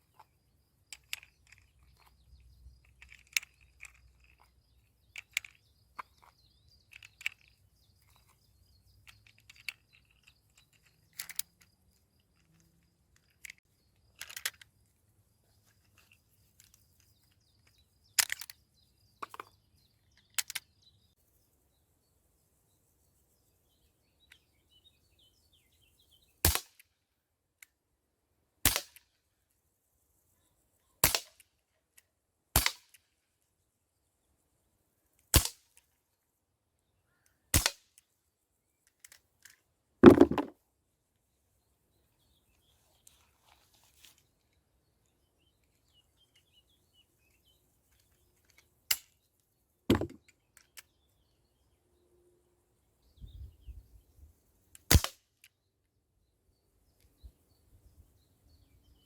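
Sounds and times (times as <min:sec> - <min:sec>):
bb revolver shots cracking: 0:26.5 - 0:26.8, 0:28.7 - 0:29.0, 0:32.6 - 0:32.9, 0:35.4 - 0:35.6, 0:37.5 - 0:37.8, 0:54.9 - 0:55.2.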